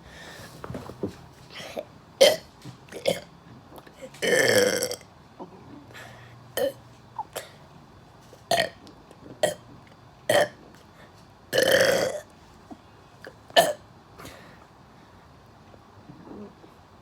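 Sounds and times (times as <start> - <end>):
person burping: 4.2 - 5.0, 11.5 - 12.3.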